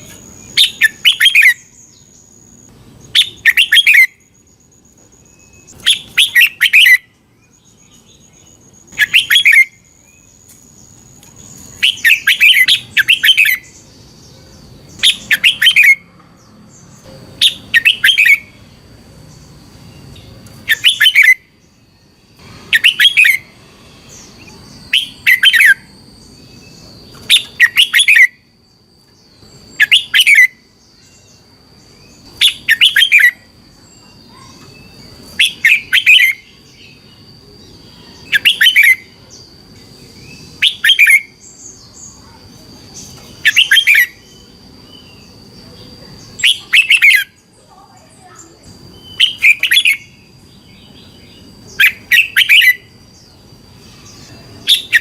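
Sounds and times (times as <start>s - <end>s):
bird whistling short phrases: 0.6s - 1.6s, 20.7s - 21.4s, 22.7s - 23.5s.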